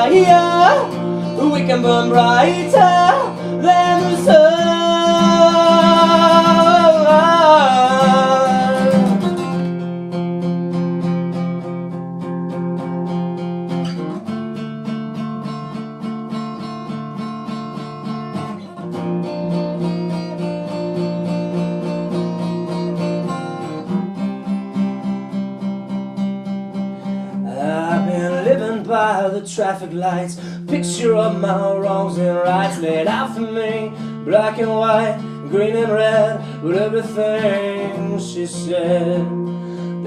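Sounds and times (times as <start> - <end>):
person singing: 0.0 - 9.8, 27.3 - 40.0
acoustic guitar strumming chords: 0.0 - 40.0.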